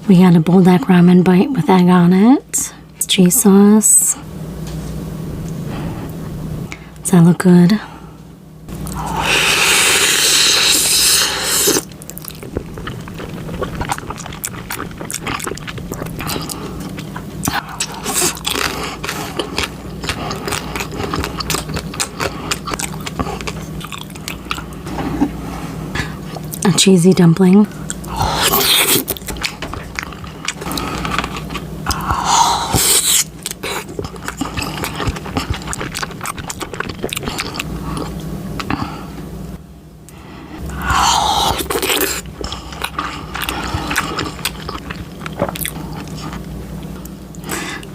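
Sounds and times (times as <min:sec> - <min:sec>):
close-miked chewing: 0:08.8 - 0:25.4, 0:27.6 - 0:38.9, 0:40.6 - 0:47.9.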